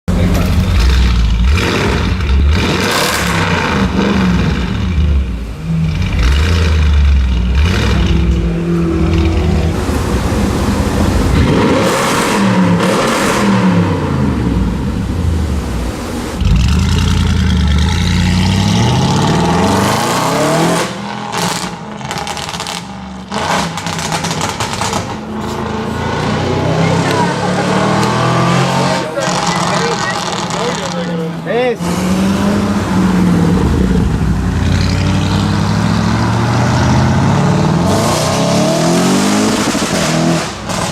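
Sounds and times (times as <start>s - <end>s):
car engine revving: 0.1s - 40.9s
exhaust crackles and pops: 21.3s - 25.6s.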